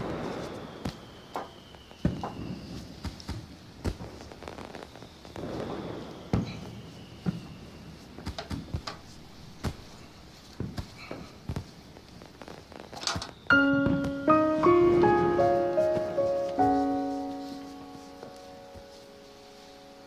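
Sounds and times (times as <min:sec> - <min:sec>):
faint high tone sliding down: 0:13.5 - 0:20.0.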